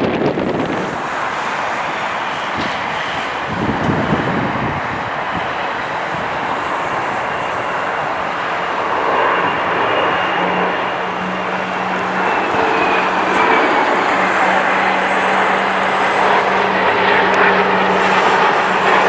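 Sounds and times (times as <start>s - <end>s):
jet engines running: 0.0s - 19.0s
wind buffeting microphone: 0.0s - 19.0s.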